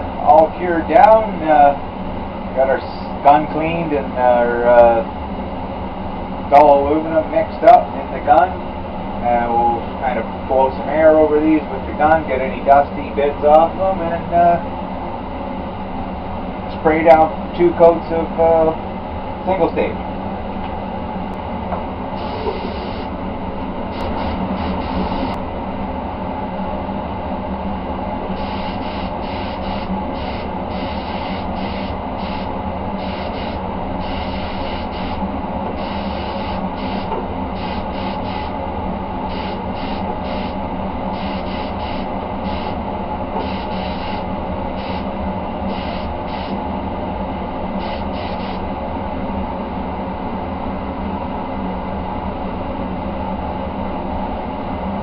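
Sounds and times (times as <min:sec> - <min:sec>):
steady background drone: 0:00.0 - 0:55.0
spray gun hissing in short bursts: 0:22.2 - 0:23.1, 0:23.9 - 0:25.4, 0:28.4 - 0:35.2, 0:35.8 - 0:38.5, 0:39.3 - 0:42.8, 0:43.4 - 0:45.1, 0:45.7 - 0:46.6, 0:47.8 - 0:48.6.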